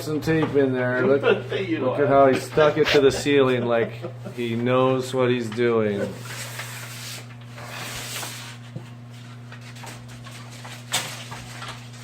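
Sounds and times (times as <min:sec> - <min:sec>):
steady low hum: 0:00.0 - 0:12.0
tape scraping and rubbing: 0:06.1 - 0:08.6.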